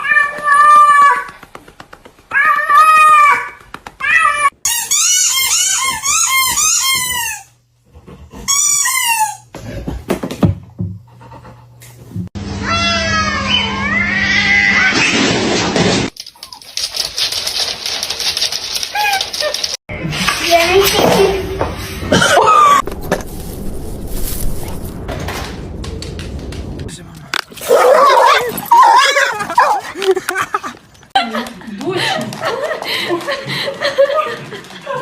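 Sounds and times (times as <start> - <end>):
cats meowing: 0.0 - 1.2, 12.6 - 15.0.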